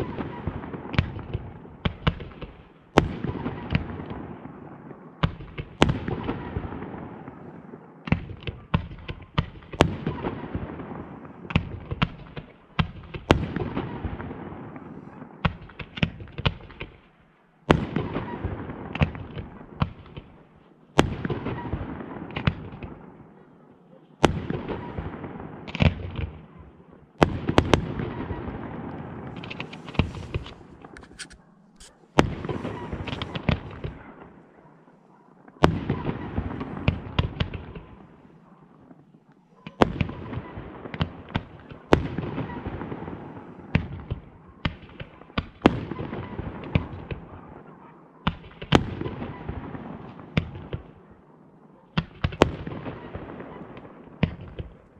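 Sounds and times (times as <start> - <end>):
firework crackling: 29.1 - 34.0
firework shell bursts: 29.4 - 33.3.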